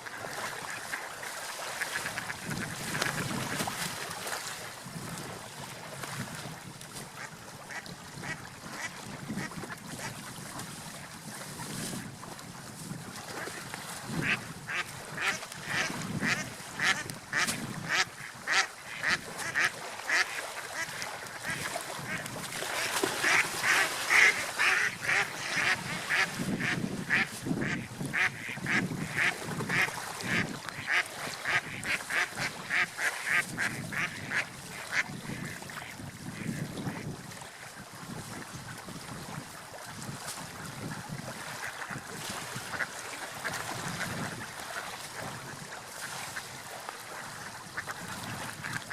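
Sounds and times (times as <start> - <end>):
ducks quacking: 7.2 - 10.2, 13.4 - 22.2, 22.8 - 36.7, 47.7 - 48.9.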